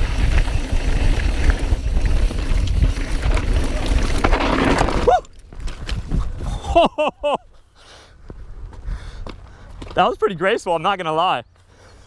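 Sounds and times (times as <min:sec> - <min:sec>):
bike tyre rumble on dirt: 0:00.0 - 0:06.8
wind rushing over microphone: 0:00.0 - 0:06.8.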